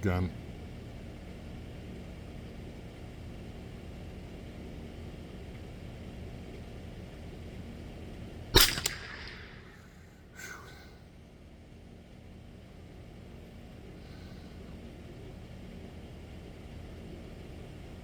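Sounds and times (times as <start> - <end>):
steady low rumble: 8.5 - 10.6
rifle shot with echo: 8.6 - 10.1.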